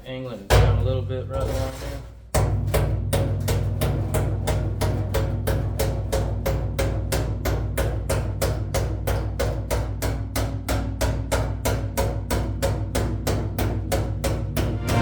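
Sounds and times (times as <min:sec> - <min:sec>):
steady drum beat: 0:02.3 - 0:15.0
sustained low notes: 0:14.6 - 0:15.0.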